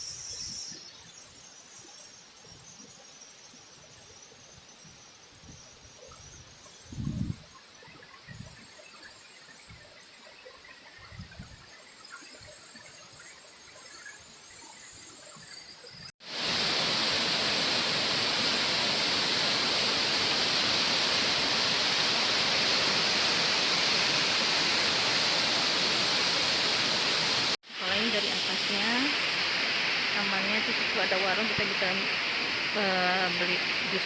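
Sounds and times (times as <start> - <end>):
faint hiss: 16.2 - 34.0
waterfall rushing: 16.2 - 34.0.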